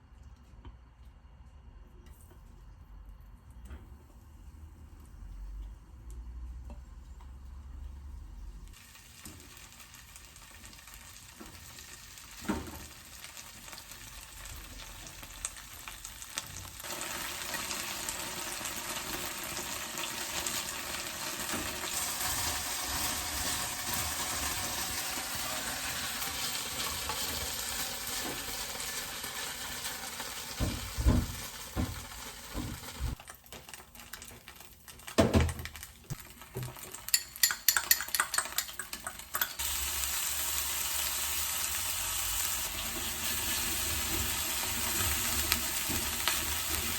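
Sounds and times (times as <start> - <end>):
food sizzling in a pan: 8.7 - 34.8, 36.1 - 46.9.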